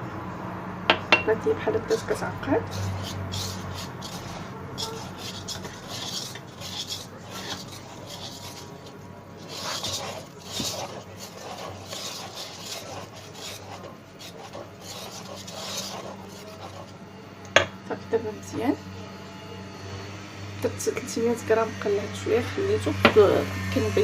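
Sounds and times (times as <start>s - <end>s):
utensil scraping batter in bowl: 1.7s - 17.8s.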